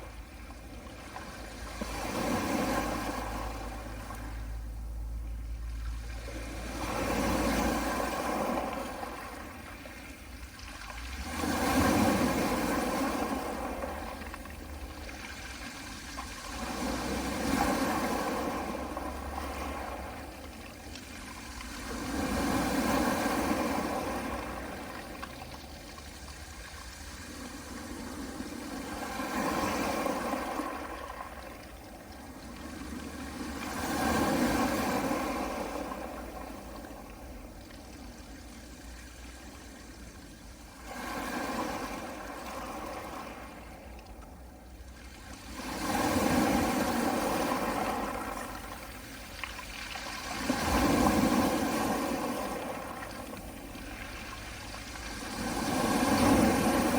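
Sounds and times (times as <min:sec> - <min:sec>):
waves washing onto pebbles: 0:00.0 - 0:04.7, 0:05.6 - 0:43.9, 0:44.8 - 0:56.9.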